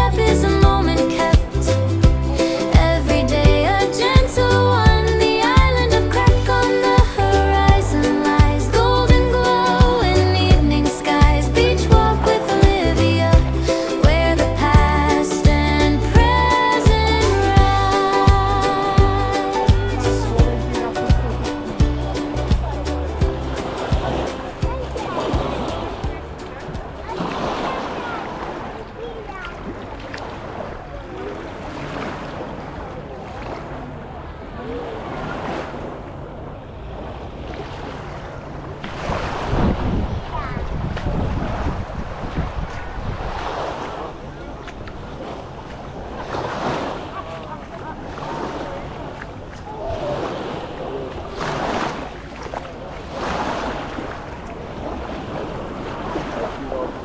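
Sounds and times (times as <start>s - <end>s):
faint voices: 0.0s - 37.0s
sea waves washing on shore: 0.0s - 57.0s
wind on microphone: 39.0s - 46.6s.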